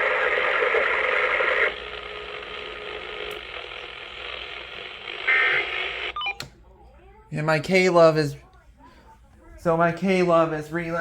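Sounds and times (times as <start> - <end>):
radio hiss: 0.0 - 6.2.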